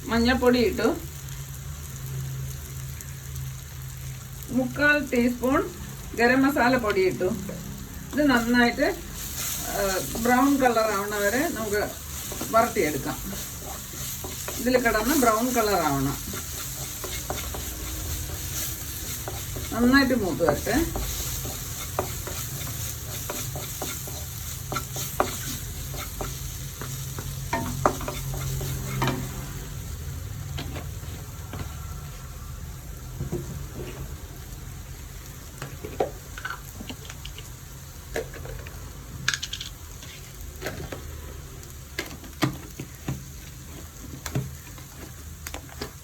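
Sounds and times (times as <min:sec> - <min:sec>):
food sizzling in a pan: 0:00.0 - 0:46.0
spoon scraping and tapping pan: 0:12.2 - 0:29.4.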